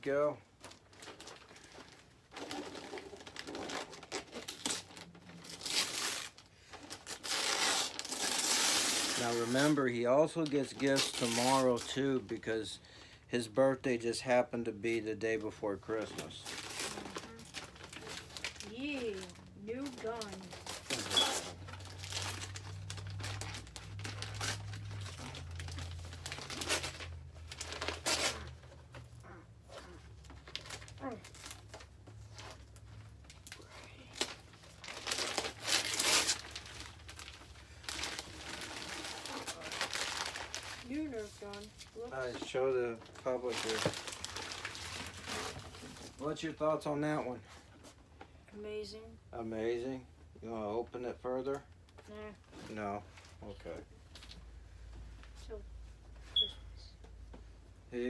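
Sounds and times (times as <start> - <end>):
wrapping paper tearing and crinkling: 0.5 - 12.5, 15.4 - 47.2.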